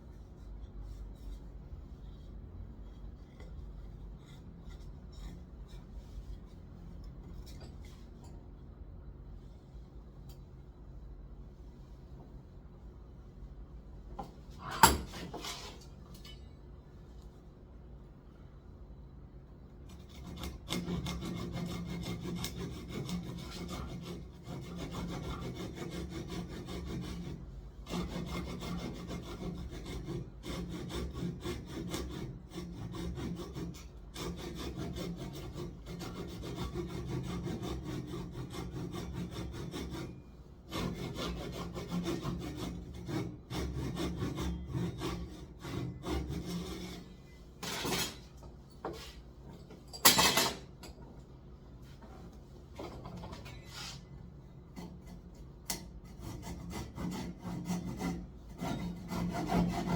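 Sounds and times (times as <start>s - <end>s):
handsaw cutting wood: 20.2s - 47.0s, 56.1s - 59.9s.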